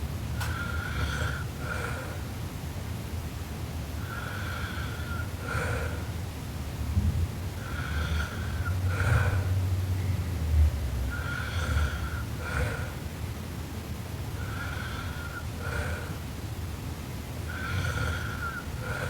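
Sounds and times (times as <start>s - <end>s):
girl snoring: 7.6s - 9.6s, 11.1s - 13.0s, 17.5s - 19.0s.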